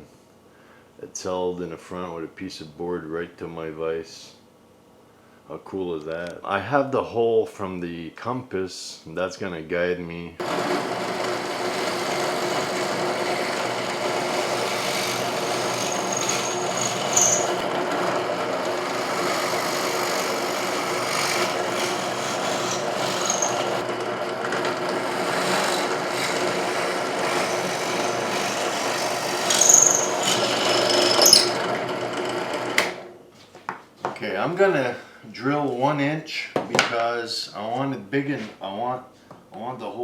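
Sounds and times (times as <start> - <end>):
power tool sanding wood: 10.4 - 33.0.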